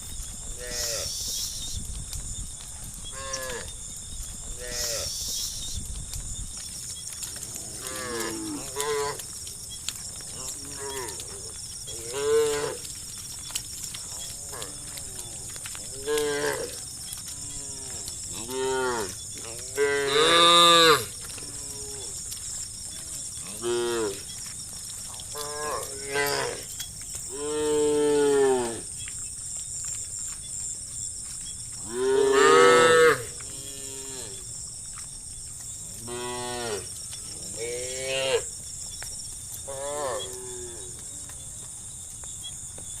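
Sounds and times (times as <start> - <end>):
steady high-pitched hiss: 0.0 - 43.0
cows mooing: 7.4 - 9.2, 10.2 - 13.0, 14.1 - 22.2, 23.4 - 24.3, 25.2 - 26.7, 31.8 - 34.4.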